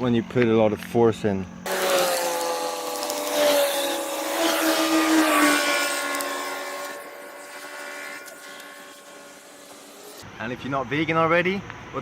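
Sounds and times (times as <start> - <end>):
motor humming: 1.7 - 10.2.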